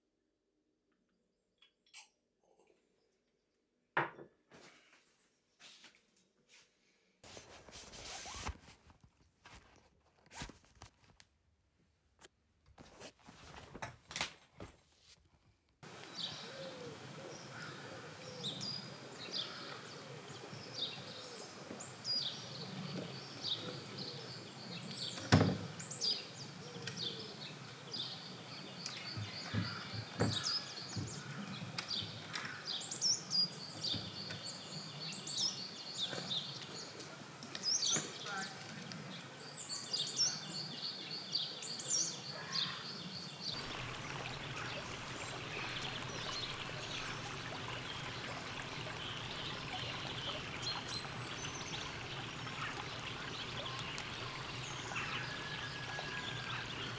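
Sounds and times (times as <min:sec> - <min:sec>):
small birds chirping: 0:15.8 - 0:31.3, 0:43.5 - 0:56.9.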